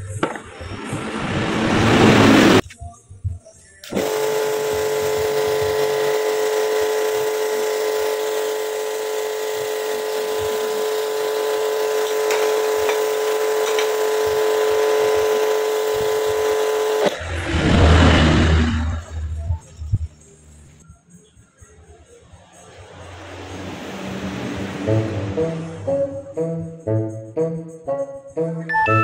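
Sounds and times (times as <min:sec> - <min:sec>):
small motor humming: 0:03.8 - 0:17.3.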